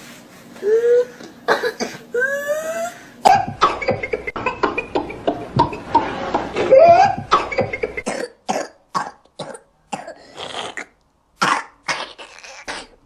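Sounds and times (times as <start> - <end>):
child coughing: 1.5 - 2.2, 3.2 - 5.8, 6.8 - 13.0.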